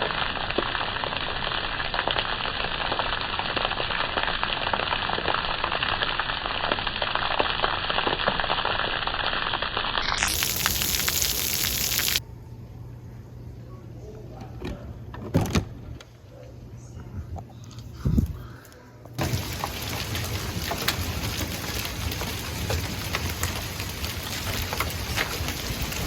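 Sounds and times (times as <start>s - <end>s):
heavy rain and hail pelting: 10.0s - 12.2s, 19.2s - 26.0s.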